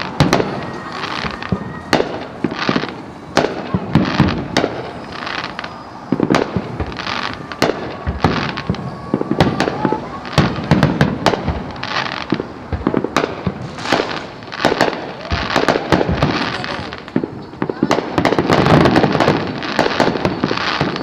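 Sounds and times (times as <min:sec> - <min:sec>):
faint rising whistle: 0:00.0 - 0:03.4, 0:04.0 - 0:12.6
firework crackling: 0:00.0 - 0:21.0
firework shell bursts and booms: 0:00.0 - 0:21.0.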